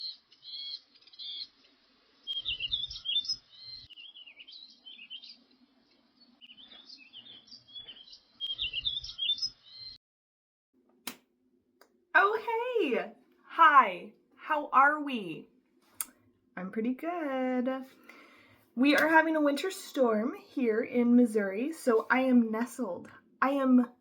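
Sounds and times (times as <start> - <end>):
small birds chirping: 0.0 - 10.0.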